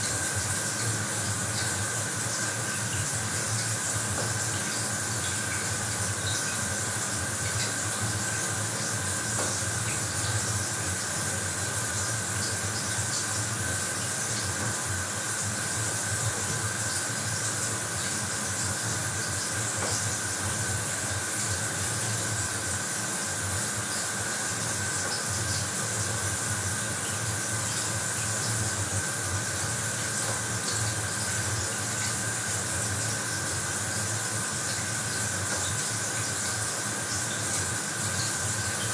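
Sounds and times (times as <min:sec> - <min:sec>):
shower water spraying: 0:00.0 - 0:38.9.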